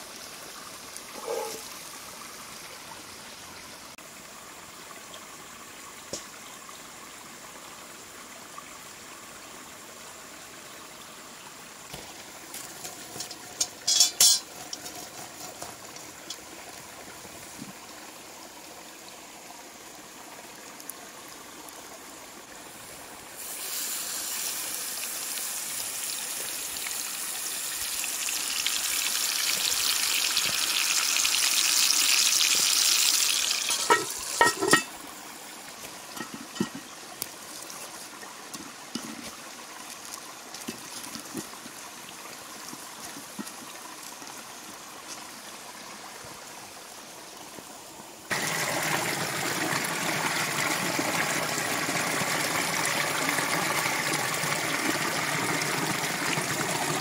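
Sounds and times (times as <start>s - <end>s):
trickling hiss: 0.0s - 57.0s
food frying sizzle: 23.4s - 35.0s.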